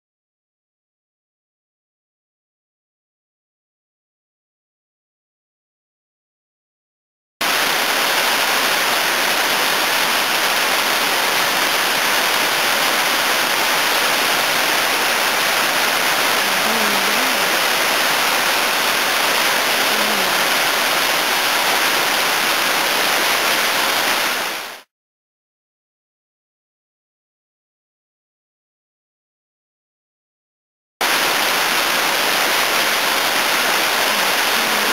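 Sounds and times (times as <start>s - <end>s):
waterfall rushing: 7.4s - 24.9s, 31.0s - 34.9s.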